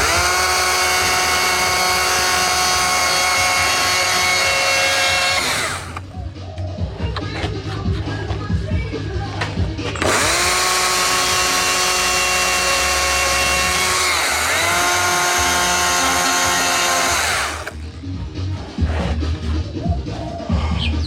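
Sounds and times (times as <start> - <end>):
chainsaw revving: 0.0 - 6.1, 10.0 - 17.8.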